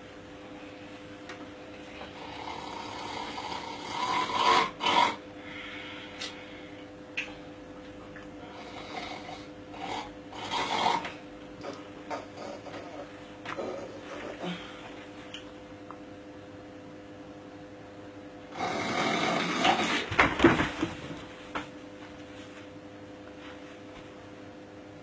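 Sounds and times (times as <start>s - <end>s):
person snoring: 2.0s - 6.7s, 8.4s - 14.9s, 18.5s - 20.1s.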